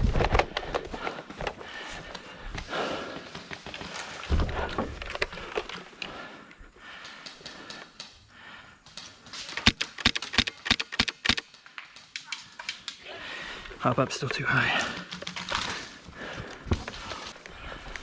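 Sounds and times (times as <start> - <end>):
gun clicks: 9.0 - 13.0
airsoft gun shots: 9.6 - 11.4.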